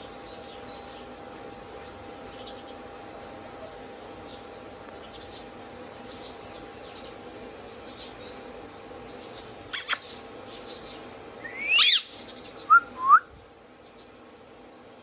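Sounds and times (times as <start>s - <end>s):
steady background hum: 0.0s - 15.0s
parakeet chirping: 9.7s - 10.1s, 11.4s - 12.2s.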